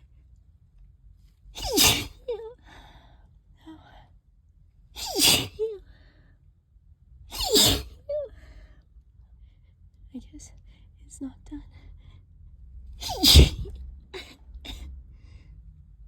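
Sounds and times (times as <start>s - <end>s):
person sneezing: 1.6s - 2.4s, 5.0s - 5.7s, 7.3s - 8.3s, 13.0s - 13.7s.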